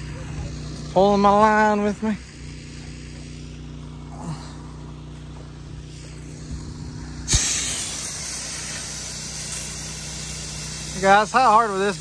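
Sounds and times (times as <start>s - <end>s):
pump engine humming: 0.0s - 12.0s
spray hissing: 5.8s - 12.0s
spray gun knock: 7.2s - 11.8s.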